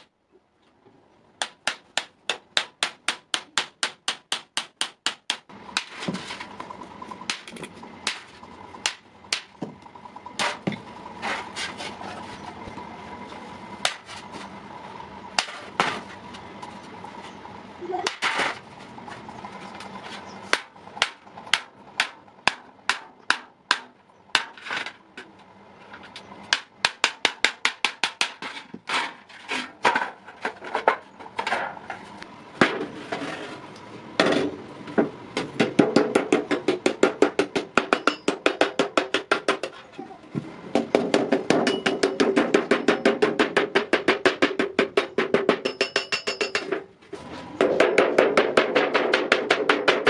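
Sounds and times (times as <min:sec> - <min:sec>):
hammer striking iron on anvil: 0:20.5 - 0:24.6, 0:35.6 - 0:39.7, 0:41.5 - 0:46.8.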